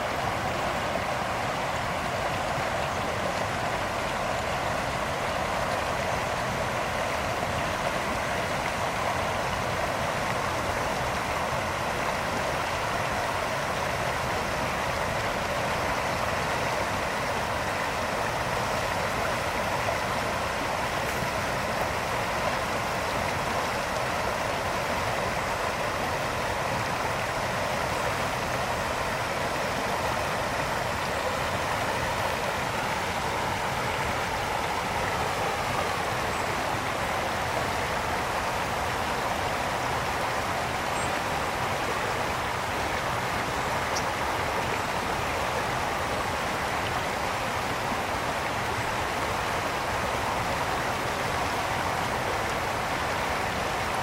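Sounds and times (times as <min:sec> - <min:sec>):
brook water flowing: 0:00.0 - 0:54.0.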